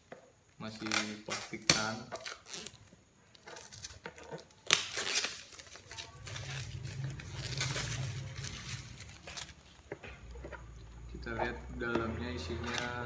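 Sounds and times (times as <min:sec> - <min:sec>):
plastic wrap tearing and crinkling: 0:00.7 - 0:09.9.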